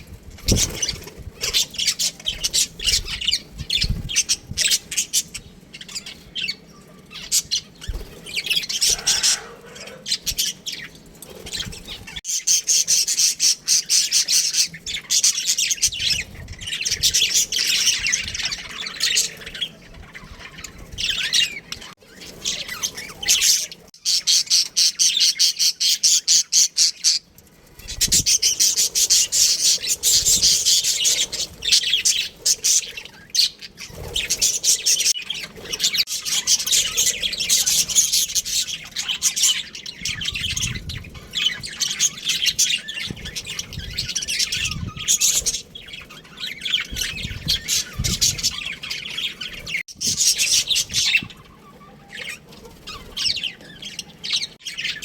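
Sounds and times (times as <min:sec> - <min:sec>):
budgerigars chattering: 0:00.4 - 0:10.9, 0:27.9 - 0:55.0.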